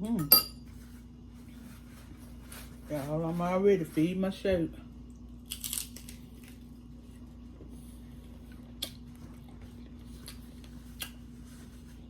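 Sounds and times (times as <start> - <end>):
faint steady hum: 0.0 - 12.0
chewing with crunches: 5.4 - 11.9.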